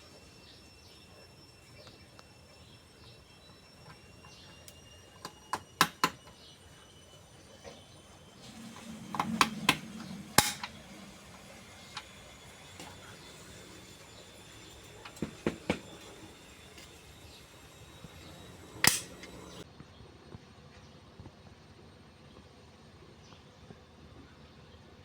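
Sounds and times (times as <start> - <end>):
hard objects clicking and knocking: 15.0 - 16.1.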